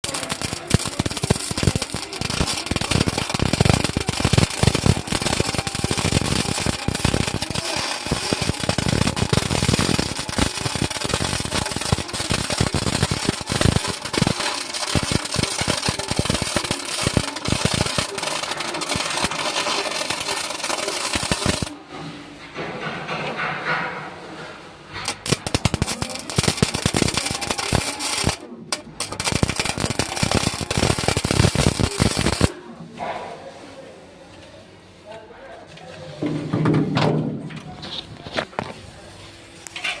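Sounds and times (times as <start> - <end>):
welding arc crackling: 0.0 - 21.8, 25.0 - 32.5.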